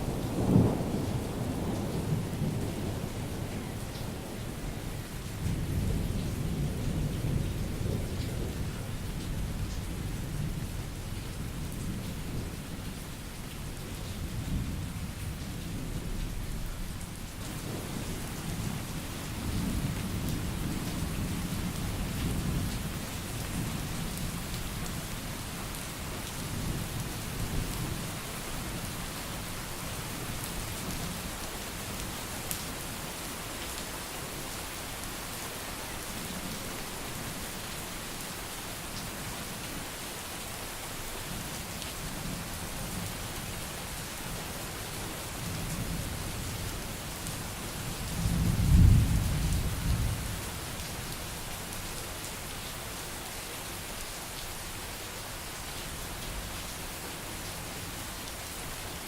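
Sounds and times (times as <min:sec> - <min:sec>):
steady rain: 0:00.0 - 0:59.0
thunder rumbling: 0:48.2 - 0:50.3.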